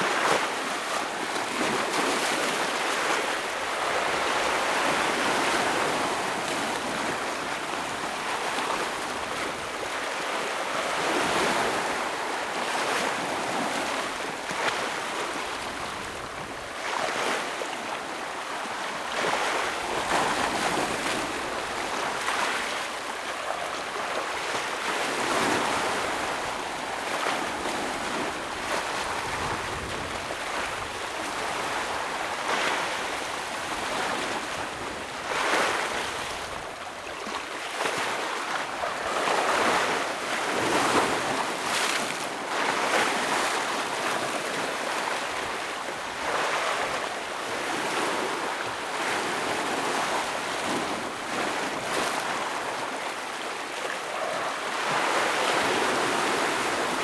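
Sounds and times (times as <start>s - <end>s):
ocean waves breaking on rocks: 0.0s - 57.0s.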